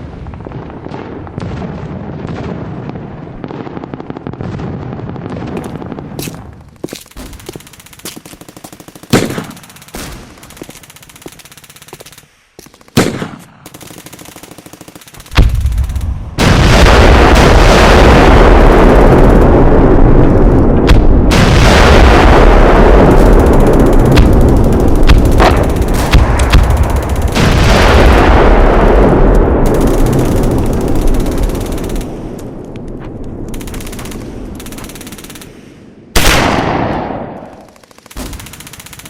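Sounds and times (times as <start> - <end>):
rapid gunfire: 6.6 - 32.6, 33.5 - 39.0
single gunshots: 9.1 - 10.3, 12.9 - 13.6, 35.6 - 37.6.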